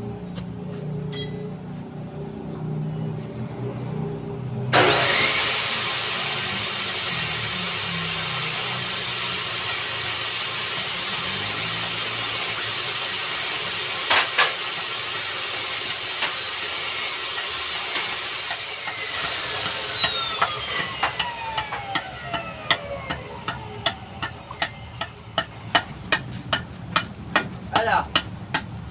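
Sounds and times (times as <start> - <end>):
angle grinder whine: 4.7 - 25.4
grinding hiss: 4.8 - 26.2.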